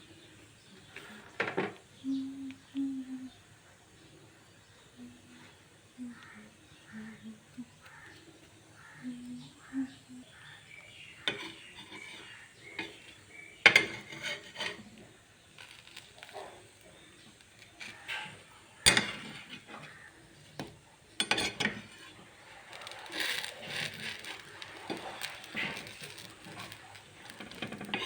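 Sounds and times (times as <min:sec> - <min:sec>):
utensils clinking on cookware: 0:11.2 - 0:14.8, 0:17.8 - 0:19.8, 0:21.2 - 0:28.0
noisy stirring in cookware: 0:11.2 - 0:16.6, 0:17.2 - 0:28.0.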